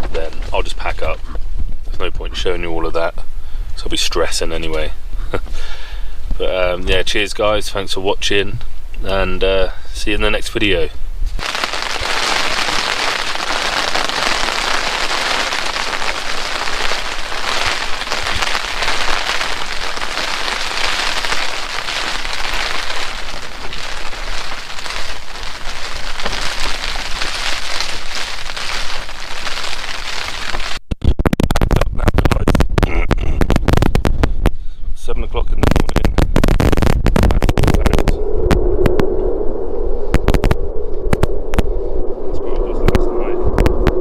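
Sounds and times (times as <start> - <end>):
low rumbling noise: 10.8 - 30.8, 31.6 - 44.0
heavy rain hissing: 11.4 - 30.8.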